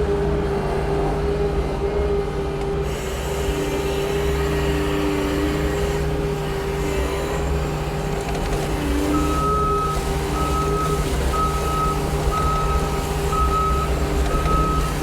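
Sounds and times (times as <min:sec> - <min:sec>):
diesel engine running: 0:07.9 - 0:15.0.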